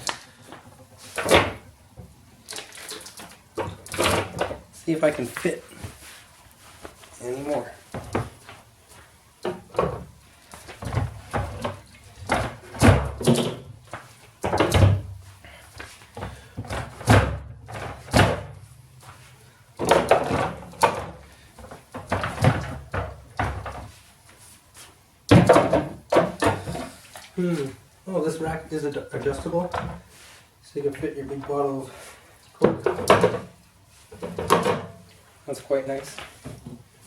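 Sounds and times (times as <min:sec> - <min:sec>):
knocks and clunks packing fridge: 0:10.8 - 0:13.8, 0:14.4 - 0:15.2, 0:16.2 - 0:18.6, 0:19.8 - 0:21.2, 0:22.0 - 0:23.9, 0:25.3 - 0:26.8, 0:32.6 - 0:33.5, 0:34.2 - 0:35.0.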